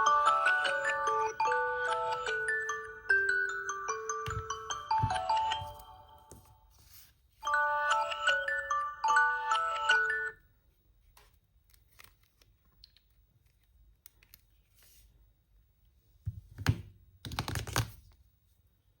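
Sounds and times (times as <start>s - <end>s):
phone alarm melody: 0.0s - 6.4s, 7.4s - 10.4s
phone being tapped and handled: 4.2s - 6.5s.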